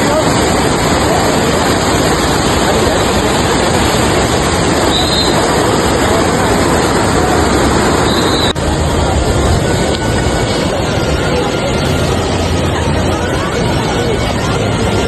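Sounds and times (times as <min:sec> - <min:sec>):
short high tones: 0:08.0 - 0:08.6.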